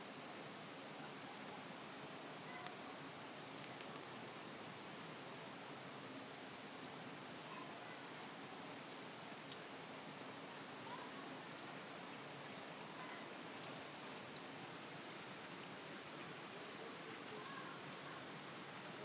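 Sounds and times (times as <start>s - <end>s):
rushing water: 0.0s - 19.0s.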